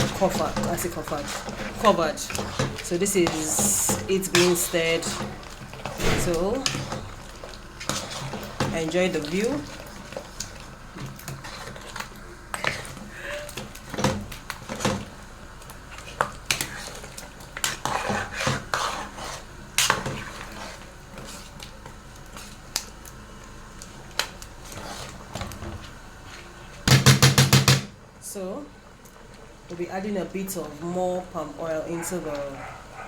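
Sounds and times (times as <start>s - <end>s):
spoon scraping a cooking pot: 0.0s - 10.3s, 11.0s - 13.0s, 16.0s - 21.6s, 24.6s - 26.4s.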